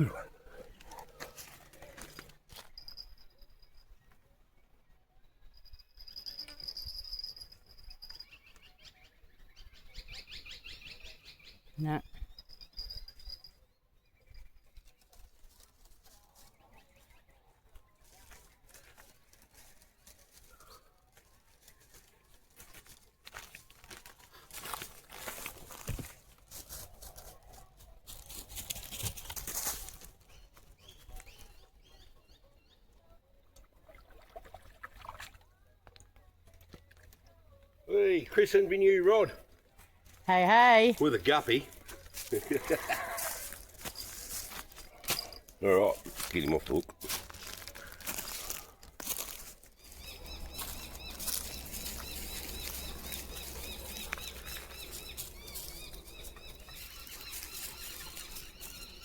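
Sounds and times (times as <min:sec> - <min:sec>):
rustling and crackling: 0:41.6 - 0:59.0
bird chirping: 0:49.8 - 0:59.0.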